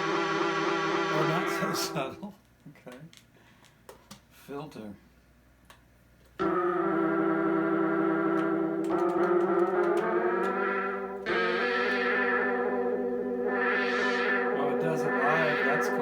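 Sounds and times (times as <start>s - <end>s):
sustained synthesizer note: 0.0s - 2.2s, 6.4s - 16.0s.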